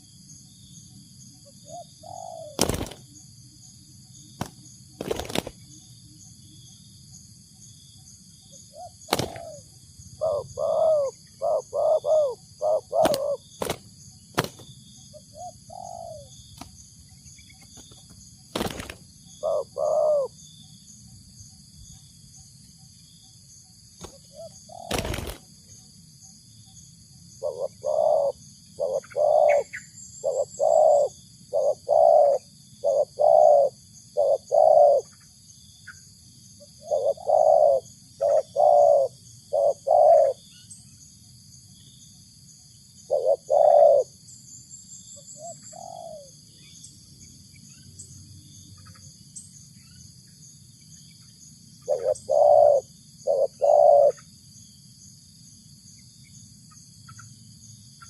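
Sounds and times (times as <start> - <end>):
dove cooing: 1.4 - 3.0, 8.7 - 13.8, 14.4 - 16.4, 18.6 - 20.4, 24.0 - 25.4, 27.4 - 35.2, 36.8 - 40.6, 43.1 - 44.2, 45.4 - 46.4, 51.8 - 54.3.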